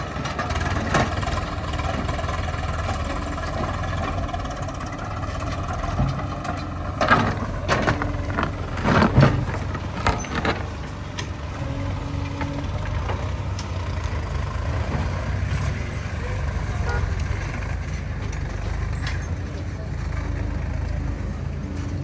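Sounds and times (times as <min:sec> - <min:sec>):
loud metallic clanks and knocks: 0:00.0 - 0:11.6
diesel engine running: 0:00.0 - 0:22.0.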